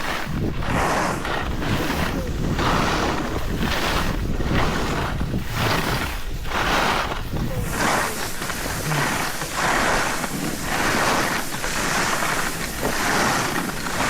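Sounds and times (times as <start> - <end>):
edges scraping on icy snow: 0.0 - 14.0
wind buffeting microphone: 0.0 - 14.0.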